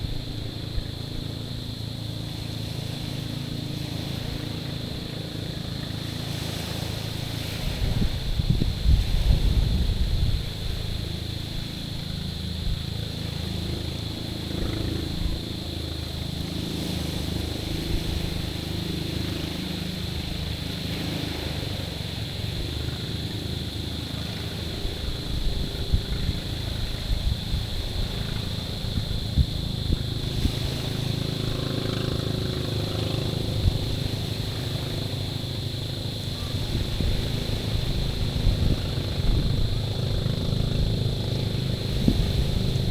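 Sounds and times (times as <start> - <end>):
low steady drone: 0.0 - 42.9
wind buffeting microphone: 7.4 - 13.7, 20.2 - 42.9.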